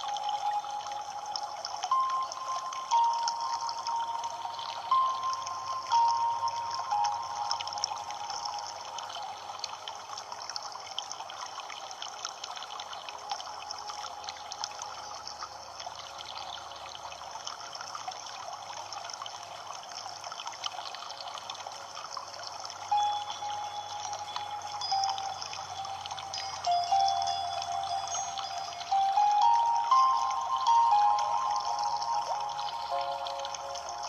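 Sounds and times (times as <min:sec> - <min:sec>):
water trickling and splashing: 0:00.0 - 0:34.0.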